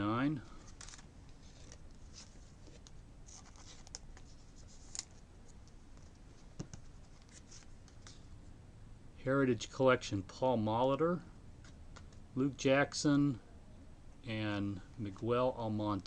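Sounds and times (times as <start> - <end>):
trading cards rustling: 0.6 - 5.2.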